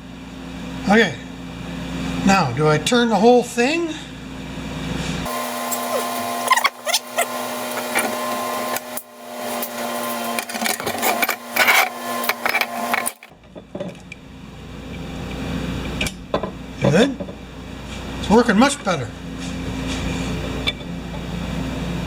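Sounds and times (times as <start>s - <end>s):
welder crackling buzz: 5.3s - 13.3s.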